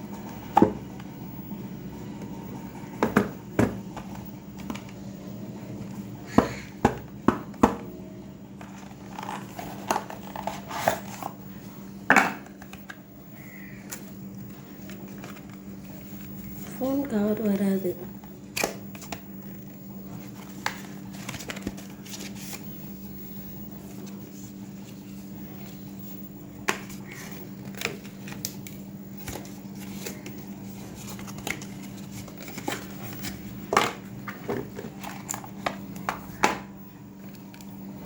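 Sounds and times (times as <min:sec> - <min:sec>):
steady low hum: 0:00.0 - 0:38.0
box and plastic wrapping crinkling: 0:08.6 - 0:11.7, 0:13.9 - 0:36.6.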